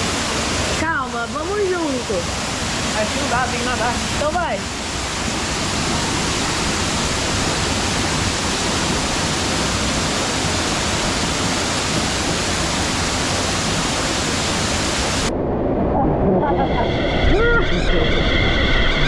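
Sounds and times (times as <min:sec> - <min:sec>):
waterfall rushing: 0:00.0 - 0:15.3.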